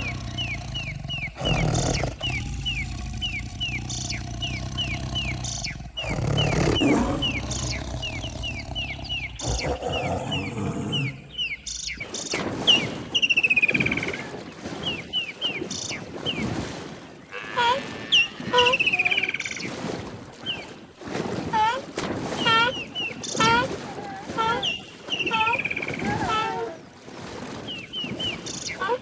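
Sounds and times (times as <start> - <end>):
big cat growling and roaring: 0.0 - 11.4.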